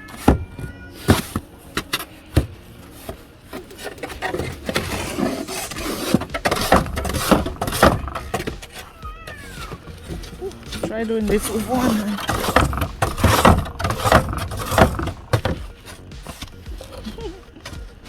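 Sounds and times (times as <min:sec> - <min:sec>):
shovel scraping snow: 0:00.9 - 0:18.0
shovel blade knocking on steps: 0:03.6 - 0:17.3.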